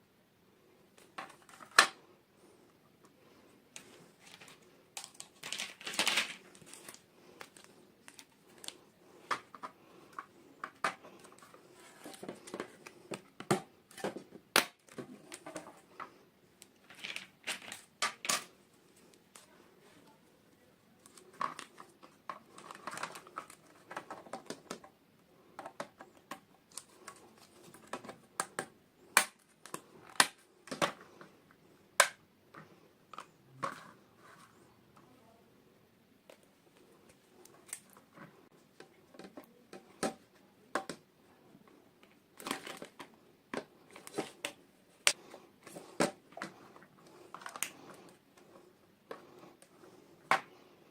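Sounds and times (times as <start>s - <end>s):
hard plastic pieces clicking: 3.8s - 18.5s
plastic packaging crinkling: 4.2s - 8.8s, 22.4s - 24.2s.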